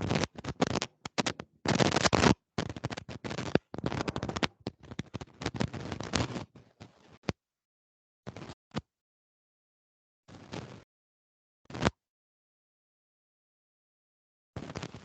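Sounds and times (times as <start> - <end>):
rustling crackling noise: 0.0 - 7.3.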